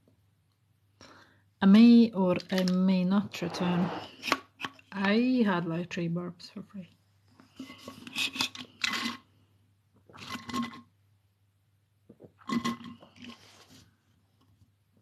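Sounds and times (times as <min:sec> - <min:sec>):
small hard objects clinking and scraping: 0:10.1 - 0:10.8.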